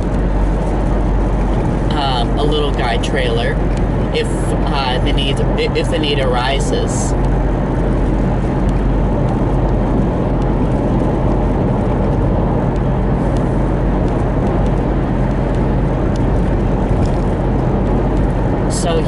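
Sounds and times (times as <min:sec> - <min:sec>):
low drone: 0:00.0 - 0:19.0
road noise inside a car: 0:00.0 - 0:19.0.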